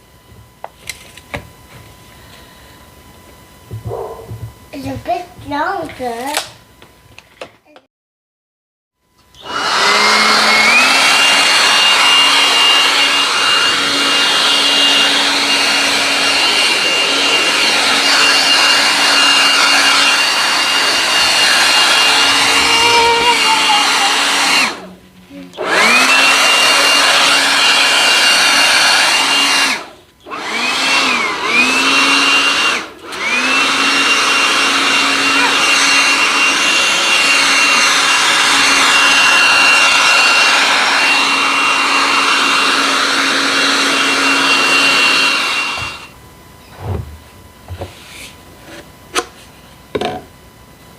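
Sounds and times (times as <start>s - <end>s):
leaf blower motor whine: 9.2s - 47.0s.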